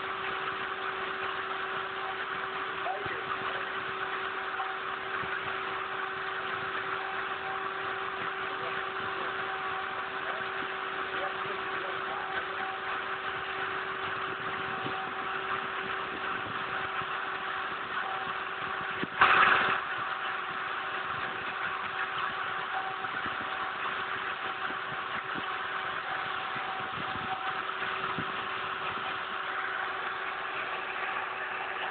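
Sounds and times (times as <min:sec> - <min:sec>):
cnc machine motor hum: 0:00.0 - 0:31.9
burst of noise: 0:18.6 - 0:21.8
hiss: 0:19.2 - 0:19.8.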